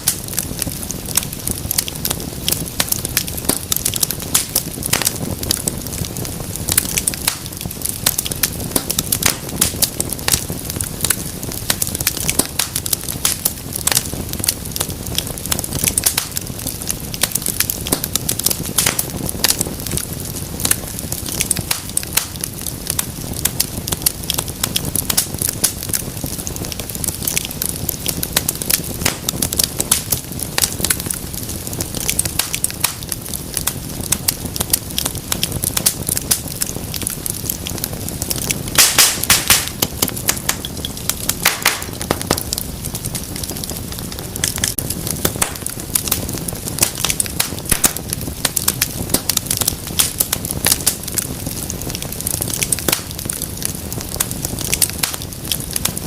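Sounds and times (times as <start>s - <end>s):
fire pops and snaps: 0.0s - 56.0s
wood fire crackling: 0.0s - 56.0s.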